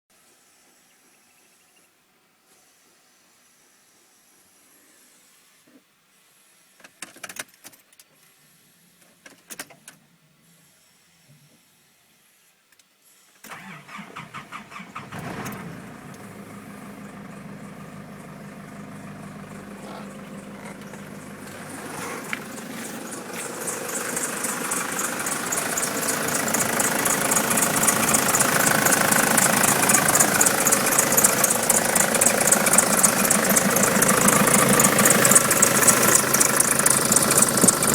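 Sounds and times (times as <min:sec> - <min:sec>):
diesel engine cranking and idling: 0:13.5 - 0:37.9
rhythmic high-pitched squeak: 0:19.8 - 0:37.9.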